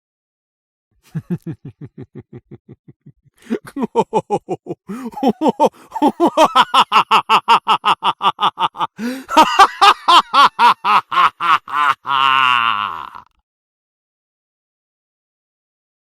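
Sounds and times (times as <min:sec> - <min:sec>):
person cackling laughter: 0:01.1 - 0:13.3.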